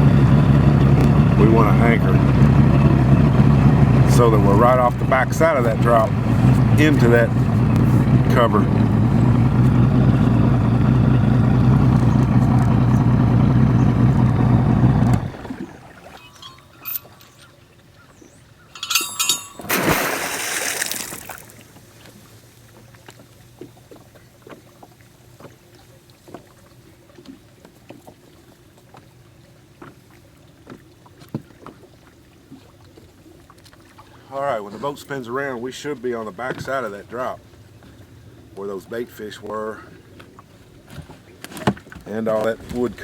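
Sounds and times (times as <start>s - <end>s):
outboard motor running: 0.0s - 43.0s
anchor chain rattle: 16.1s - 17.6s, 18.7s - 19.8s.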